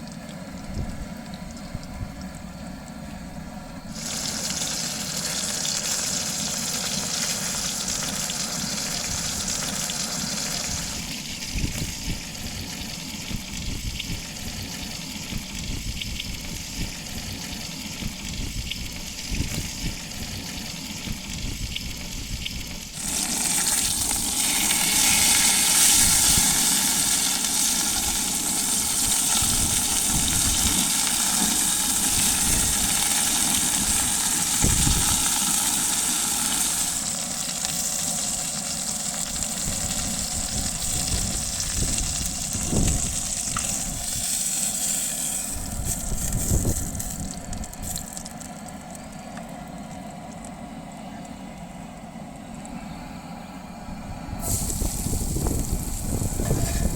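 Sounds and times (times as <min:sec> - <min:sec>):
food sizzling in a pan: 0:03.9 - 0:48.4, 0:54.4 - 0:56.9.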